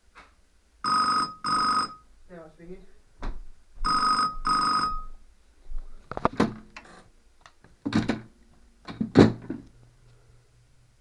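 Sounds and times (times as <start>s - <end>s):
payphone ringing: 0.8s - 2.0s, 3.8s - 5.2s
clunks and rattles: 8.9s - 9.7s.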